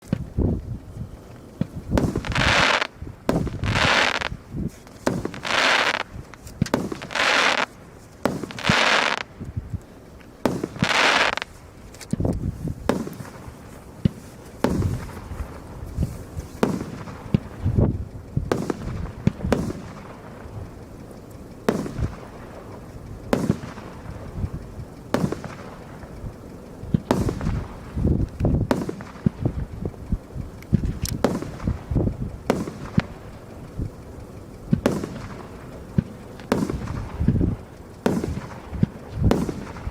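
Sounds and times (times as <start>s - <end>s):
hissing firework shots: 0.0s - 39.9s
sharp firework bangs: 1.6s - 9.3s, 10.4s - 11.6s, 12.5s - 20.5s, 21.7s - 22.7s, 23.3s - 24.2s, 25.1s - 26.0s, 26.9s - 30.0s, 31.2s - 33.3s, 34.7s - 39.9s.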